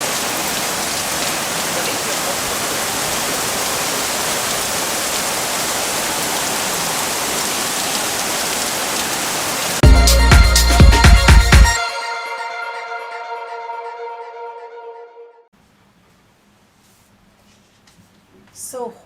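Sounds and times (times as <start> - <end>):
heavy rain falling: 0.0 - 9.9.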